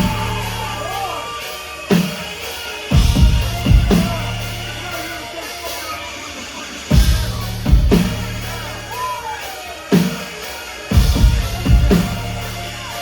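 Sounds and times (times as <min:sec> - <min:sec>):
heavy drum hits: 0:02.9 - 0:04.2.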